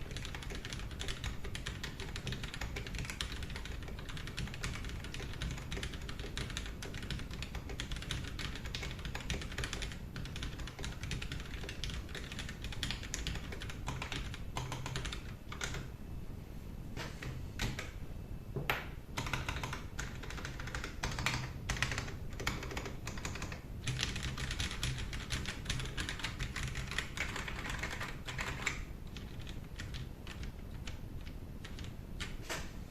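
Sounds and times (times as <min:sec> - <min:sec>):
mechanical keyboard typing: 0:00.0 - 0:15.9, 0:19.2 - 0:32.4.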